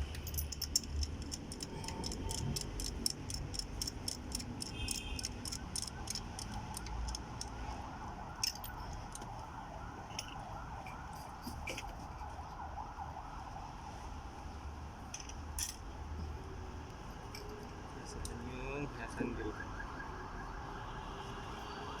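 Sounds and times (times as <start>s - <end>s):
ratchet wrench clicking: 0.0s - 7.6s.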